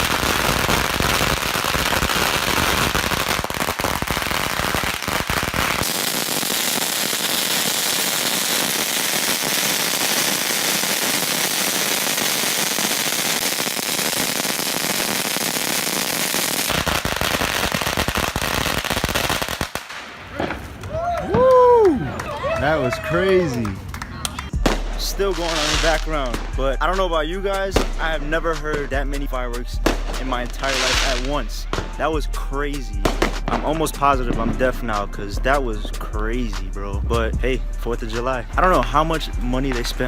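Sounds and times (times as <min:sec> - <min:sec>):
deep firework booms: 0:00.0 - 0:20.7, 0:24.6 - 0:26.9, 0:27.7 - 0:29.1, 0:29.8 - 0:32.0
fireworks crackling barrage: 0:00.0 - 0:37.0, 0:37.8 - 0:40.0.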